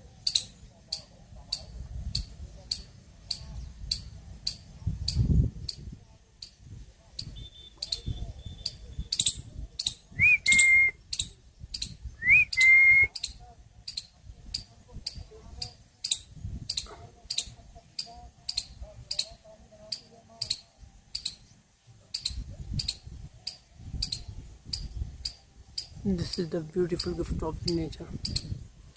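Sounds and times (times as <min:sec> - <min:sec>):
short rising whistles: 0:10.2 - 0:11.0, 0:12.2 - 0:13.2.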